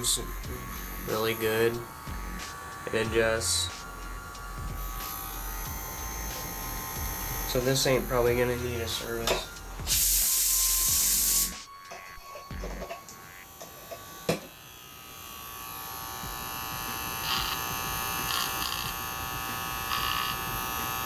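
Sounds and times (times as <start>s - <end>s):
hair trimmer buzzing: 0.0s - 21.0s
trimmer rasping: 0.0s - 21.0s
spray hiss: 8.7s - 11.7s.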